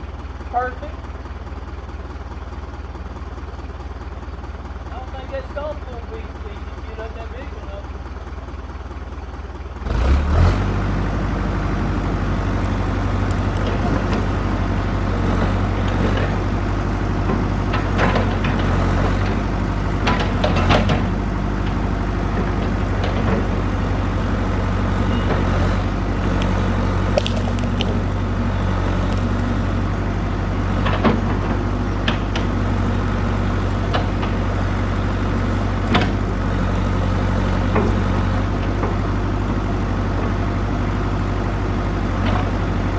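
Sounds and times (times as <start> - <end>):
backhoe engine running: 0.0 - 42.9
metallic clanks and knocks: 20.0 - 21.8.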